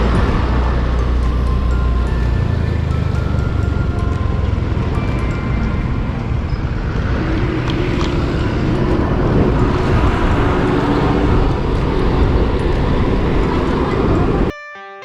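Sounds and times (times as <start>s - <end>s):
moving vehicle rumble: 0.0s - 14.5s
road and traffic noise: 0.0s - 14.5s.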